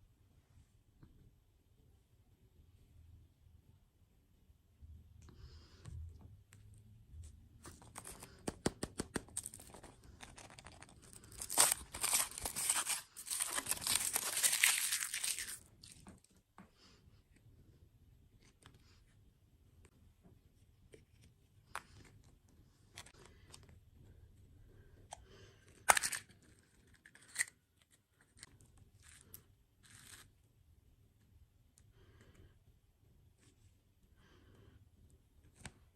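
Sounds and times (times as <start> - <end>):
food packaging crinkling: 7.8 - 16.0
packaging torn open: 7.8 - 16.0, 25.8 - 26.3.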